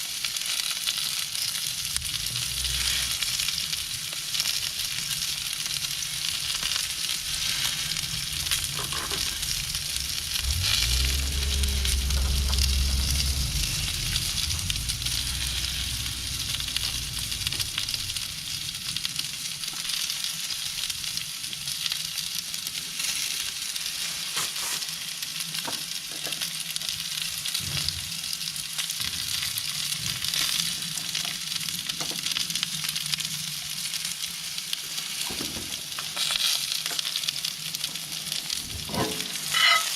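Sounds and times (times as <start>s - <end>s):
steak sizzling in a skillet: 0.0s - 39.9s
low rumble: 1.6s - 21.2s.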